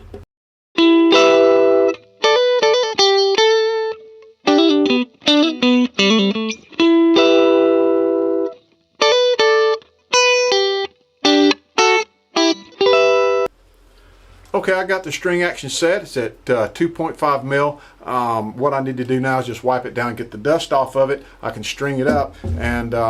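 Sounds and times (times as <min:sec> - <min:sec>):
plucked guitar notes and chords: 0:00.8 - 0:13.5, 0:22.1 - 0:23.0.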